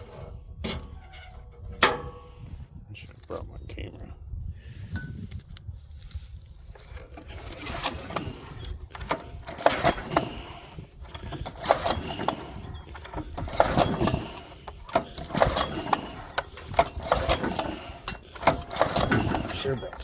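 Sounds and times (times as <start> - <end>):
small engine pull-start rattling: 6.7 - 20.0.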